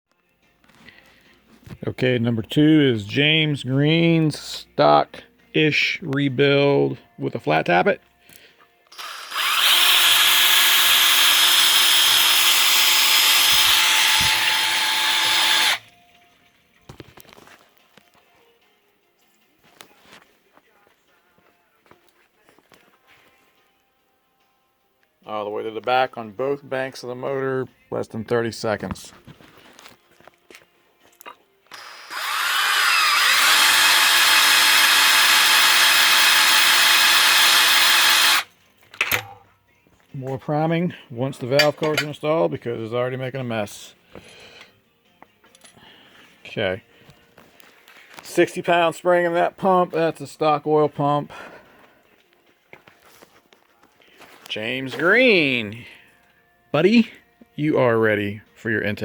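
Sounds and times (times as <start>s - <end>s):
electric drill spinning: 8.9s - 15.9s, 31.7s - 38.5s.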